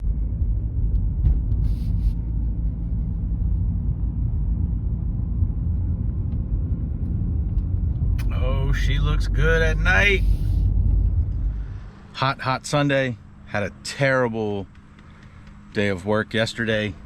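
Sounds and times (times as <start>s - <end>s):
car engine rumble: 0.0s - 17.0s.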